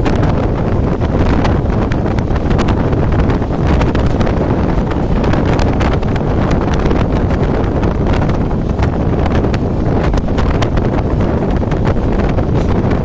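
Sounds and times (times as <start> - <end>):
train coach and wheels rumbling: 0.0 - 13.0
wind buffeting microphone: 0.0 - 13.0.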